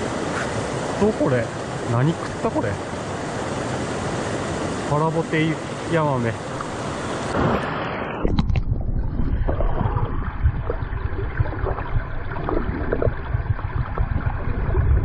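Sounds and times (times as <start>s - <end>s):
stream rushing: 0.0s - 8.6s
wind buffeting microphone: 7.2s - 15.0s.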